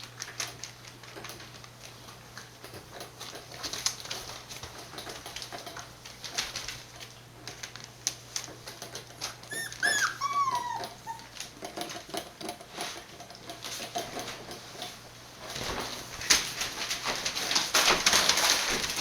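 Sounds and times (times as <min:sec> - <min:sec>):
puppy whining: 0:09.2 - 0:11.6
soft whimpers: 0:09.4 - 0:11.4.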